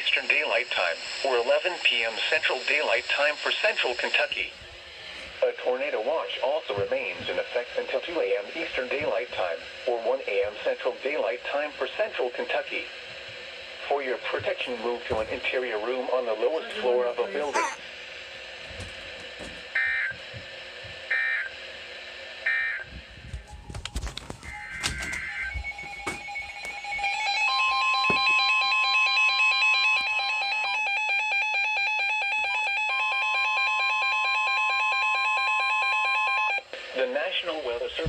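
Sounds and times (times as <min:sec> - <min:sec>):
static and clicks: 0:00.0 - 0:28.6.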